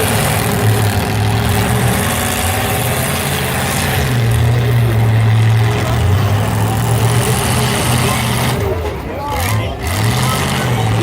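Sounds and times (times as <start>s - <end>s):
car engines droning: 0.0s - 11.0s.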